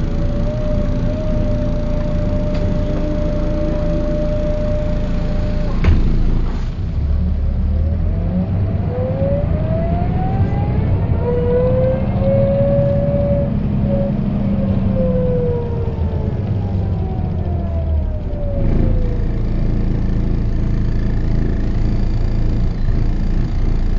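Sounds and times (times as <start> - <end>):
gear whine: 0.0 - 6.8
diesel bus engine: 0.0 - 23.9
sharp knock: 5.8 - 6.4.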